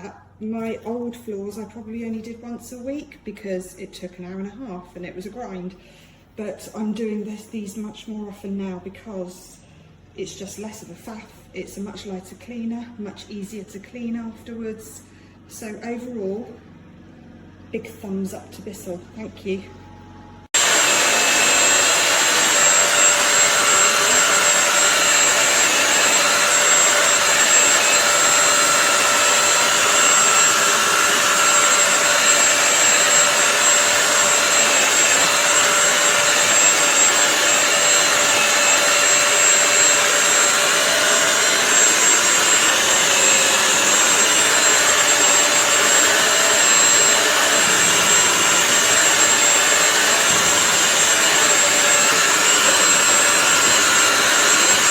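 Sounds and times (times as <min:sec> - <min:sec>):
floor cleaner suction and motor whine: 0:20.4 - 0:54.9.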